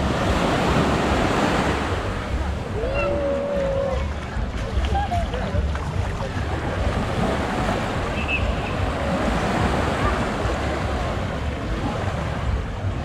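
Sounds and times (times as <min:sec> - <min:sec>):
faint voices: 0:00.0 - 0:13.0
small waves washing onto beach: 0:00.0 - 0:13.0
wind buffeting microphone: 0:00.0 - 0:13.0.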